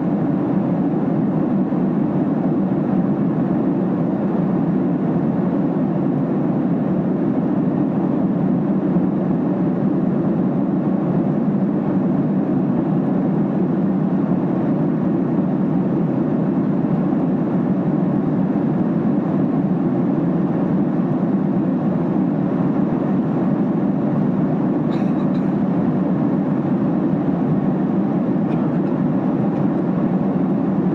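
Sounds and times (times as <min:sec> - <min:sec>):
airliner cabin drone: 0:00.0 - 0:30.9.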